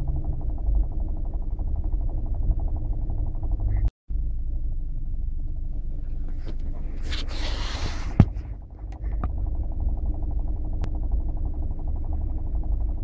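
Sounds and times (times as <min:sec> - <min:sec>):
engine knocking: 0:00.0 - 0:03.9, 0:08.2 - 0:13.0.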